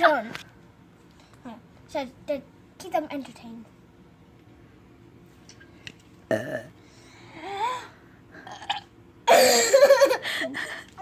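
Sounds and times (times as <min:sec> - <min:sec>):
person burping: 0:06.3 - 0:06.8, 0:08.4 - 0:09.8.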